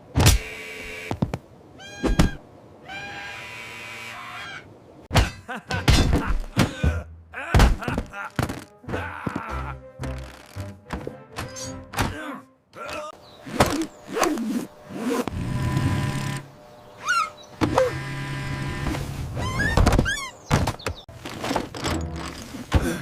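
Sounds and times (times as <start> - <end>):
sharp knocks and thunks: 5.1 - 9.4, 18.8 - 23.0
background music: 6.9 - 12.8.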